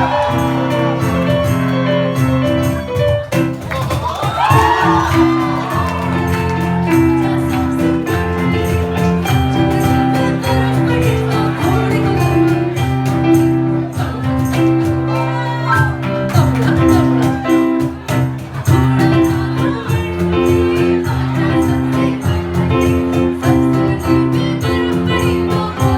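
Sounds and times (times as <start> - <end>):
retro dance music with percussion: 0.0 - 13.4.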